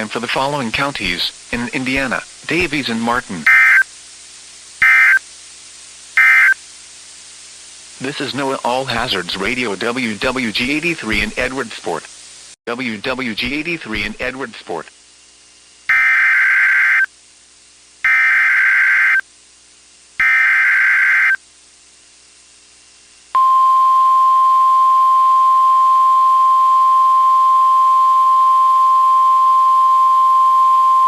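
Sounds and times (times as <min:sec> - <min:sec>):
steady warning alarm tone: 0:03.5 - 0:03.8, 0:04.8 - 0:05.2, 0:06.2 - 0:06.6, 0:15.9 - 0:17.1, 0:18.0 - 0:19.2, 0:20.2 - 0:21.4
warbling digital data bursts: 0:04.8 - 0:05.2, 0:06.2 - 0:06.6.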